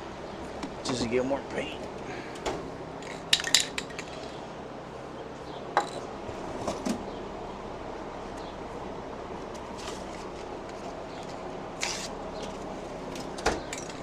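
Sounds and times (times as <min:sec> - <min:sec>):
steady background hiss: 0:00.0 - 0:14.0
metal tools clinking: 0:13.7 - 0:14.0.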